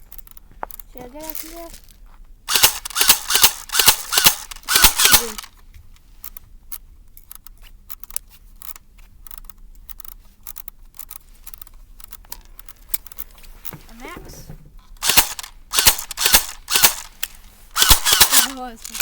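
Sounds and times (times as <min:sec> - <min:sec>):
airsoft gun shots: 0:02.5 - 0:05.5, 0:15.0 - 0:18.7.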